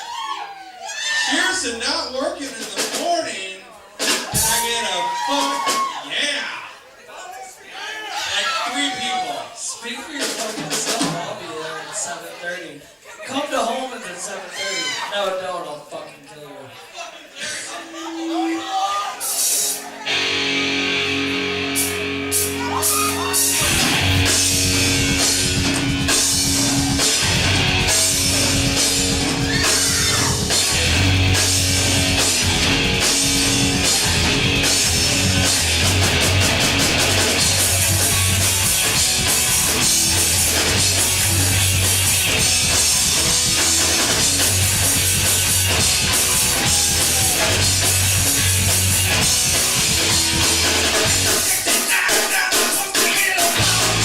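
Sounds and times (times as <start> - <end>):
drum kit with crashing cymbals: 4.0 - 4.8, 10.2 - 11.3, 21.7 - 54.0
distorted electric guitars: 19.2 - 54.0
bass guitar: 20.0 - 51.8, 53.4 - 54.0.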